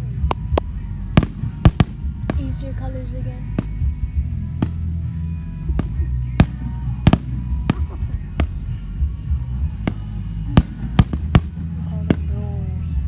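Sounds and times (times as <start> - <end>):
low hum: 0.0 - 13.0
firework shells bursting: 5.8 - 8.7, 9.9 - 11.7.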